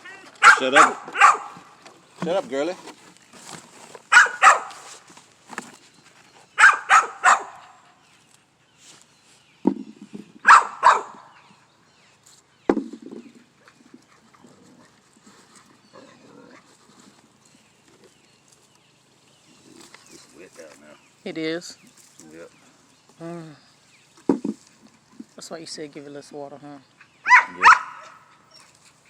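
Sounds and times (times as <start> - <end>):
dog barking: 0.4 - 1.6, 4.1 - 4.8, 6.6 - 7.8, 10.4 - 11.3, 27.2 - 28.4
dull thuds: 9.6 - 10.4, 12.7 - 13.4.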